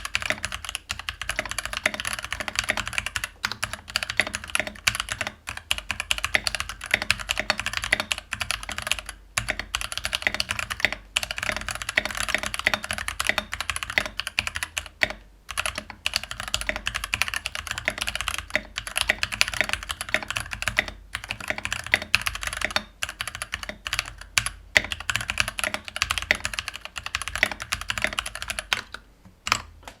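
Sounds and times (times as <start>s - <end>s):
mechanical keyboard typing: 0.0s - 30.0s.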